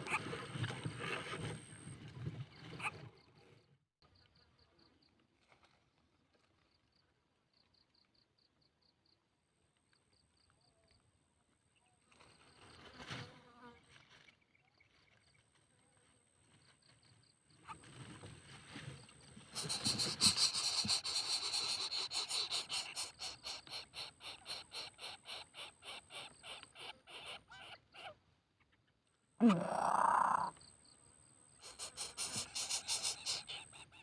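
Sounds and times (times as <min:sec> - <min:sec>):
cicada buzzing: 0:31.6 - 0:33.6.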